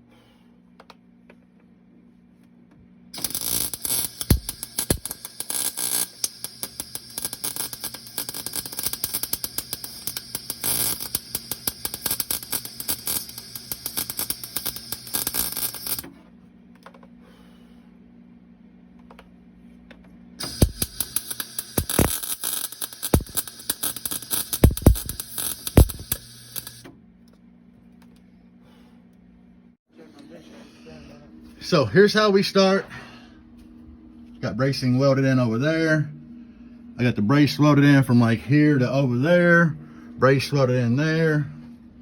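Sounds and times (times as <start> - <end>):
low hum: 3.2 - 16.0
welding arc crackling: 3.2 - 16.1, 20.4 - 26.8.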